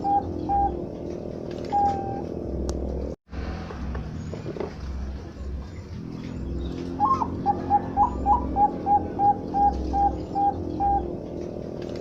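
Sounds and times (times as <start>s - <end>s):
dove cooing: 0.0s - 0.8s, 7.0s - 11.1s.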